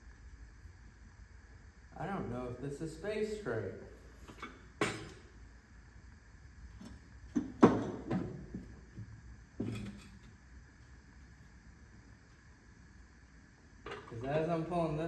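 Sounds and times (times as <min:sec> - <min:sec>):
clunks and knocks of belt and pulleys: 0:06.8 - 0:10.1.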